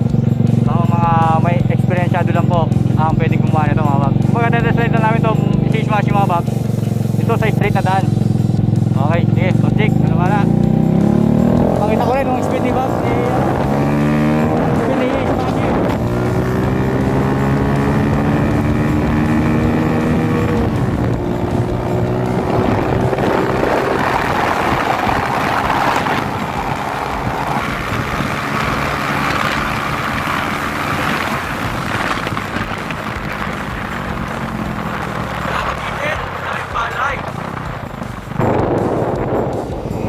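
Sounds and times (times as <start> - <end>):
motorcycle engine accelerating: 0.0 - 40.0
wind rushing over microphone: 10.3 - 40.0.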